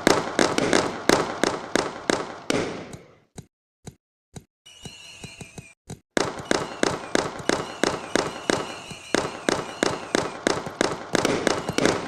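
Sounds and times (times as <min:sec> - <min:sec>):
fireworks banging: 0:00.0 - 0:03.2, 0:04.7 - 0:12.0
thin high whistle: 0:06.4 - 0:10.4.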